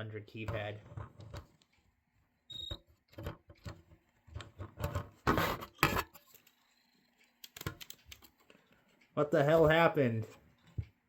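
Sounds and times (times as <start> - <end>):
small clicks and taps: 7.2 - 9.1.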